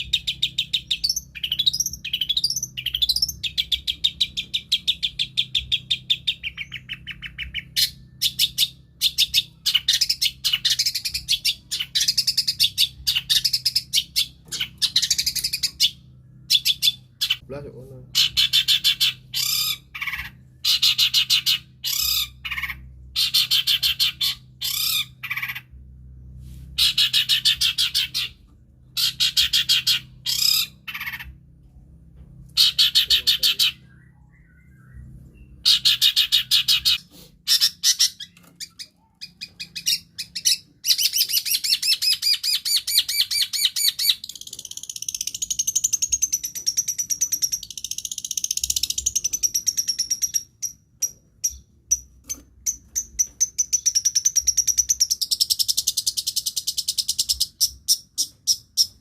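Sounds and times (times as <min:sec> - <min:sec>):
shrike harsh chattering song: 0:32.6 - 0:34.0.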